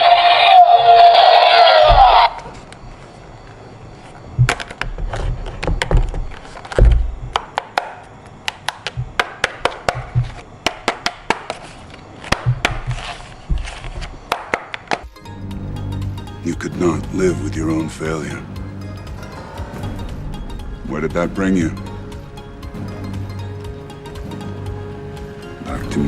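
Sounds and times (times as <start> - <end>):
low thuds: 9.0 - 9.2.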